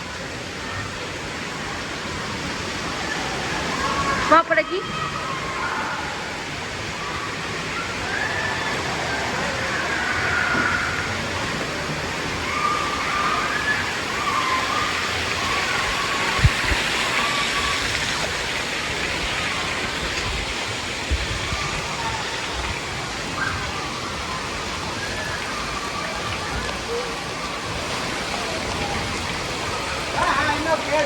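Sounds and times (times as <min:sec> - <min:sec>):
falling and splashing water: 0:00.0 - 0:31.0.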